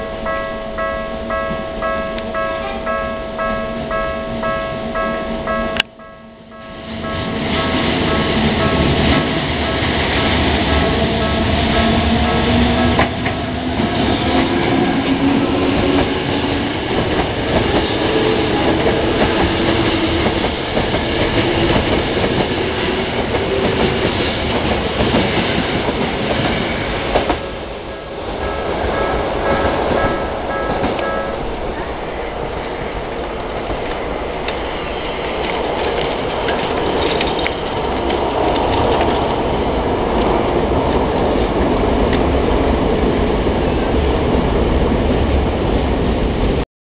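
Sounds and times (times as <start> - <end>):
level crossing warning bell: 0.0 - 13.0, 27.5 - 32.1
train wheels clattering over rails: 7.0 - 27.6, 28.2 - 42.4.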